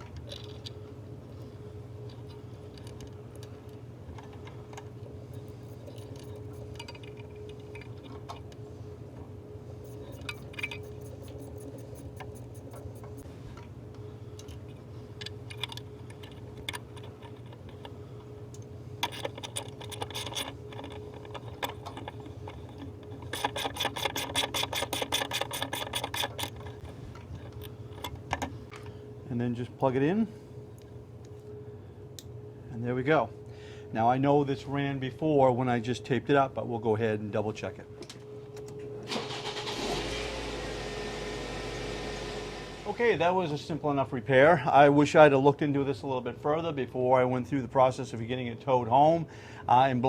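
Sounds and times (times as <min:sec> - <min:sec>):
steady low hum: 0:00.0 - 0:50.0
tools and parts clinking: 0:02.0 - 0:08.6, 0:09.9 - 0:13.2, 0:14.4 - 0:29.0
socket wrench ratchet clicking: 0:19.0 - 0:26.8.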